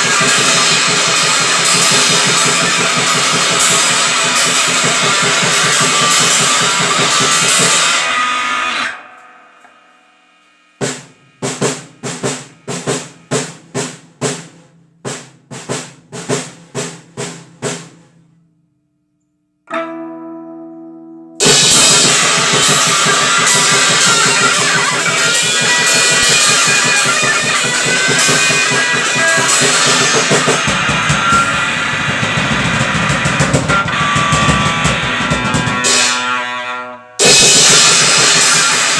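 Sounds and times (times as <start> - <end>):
grindcore band playing loudly: 0.0 - 9.7, 10.8 - 18.0, 21.4 - 38.9
ringing guitar chord: 0.0 - 11.6, 19.7 - 38.9
single guitar notes picked: 19.6 - 24.7.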